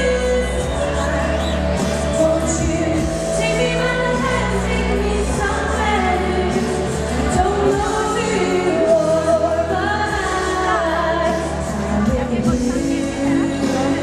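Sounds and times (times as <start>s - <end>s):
backing track with bass: 0.0s - 14.0s
woman singing pop ballad: 0.0s - 14.0s.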